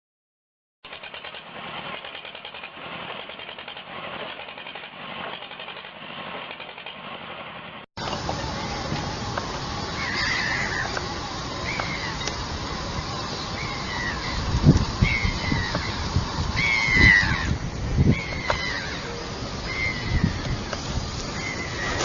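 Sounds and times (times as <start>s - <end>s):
heavy machinery engine pulsing: 8.0s - 22.0s
noisy machine sound: 8.0s - 22.0s.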